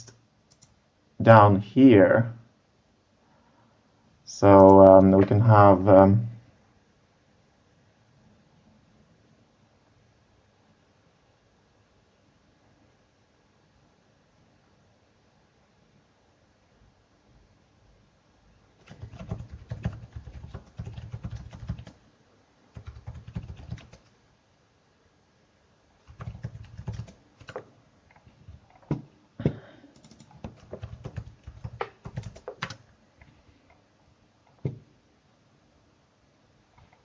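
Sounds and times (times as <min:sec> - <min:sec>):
typing on computer keyboard: 0:00.0 - 0:00.8, 0:18.8 - 0:22.0, 0:22.7 - 0:24.1, 0:26.0 - 0:29.0, 0:29.9 - 0:32.8.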